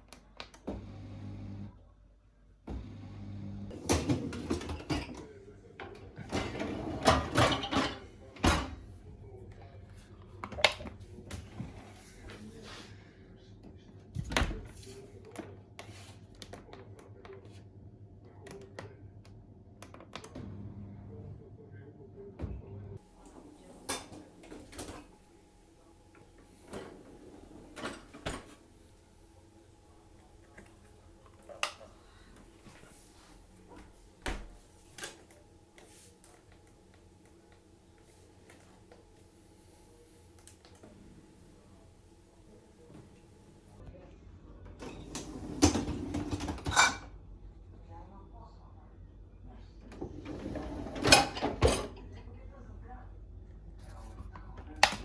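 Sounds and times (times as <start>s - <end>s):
dishes clattering in dishwasher racks: 3.7s - 8.9s, 23.2s - 25.1s, 26.5s - 28.7s, 44.8s - 47.1s, 50.0s - 52.0s.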